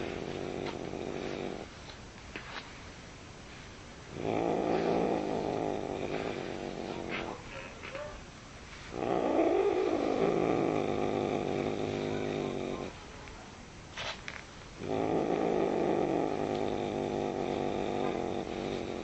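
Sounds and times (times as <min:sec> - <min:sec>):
cat growling: 0:00.0 - 0:01.7, 0:04.1 - 0:08.2, 0:08.9 - 0:13.0, 0:14.8 - 0:19.0.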